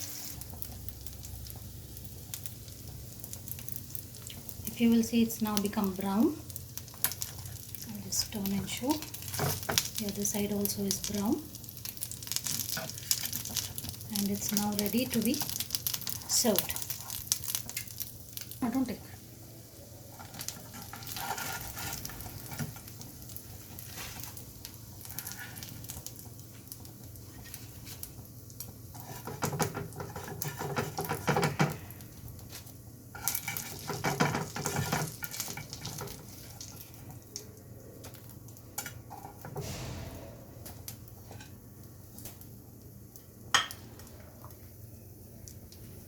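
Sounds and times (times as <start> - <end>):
meat sizzling in oil: 0.0 - 37.4
utensil scraping and clinking on pan: 20.2 - 22.8.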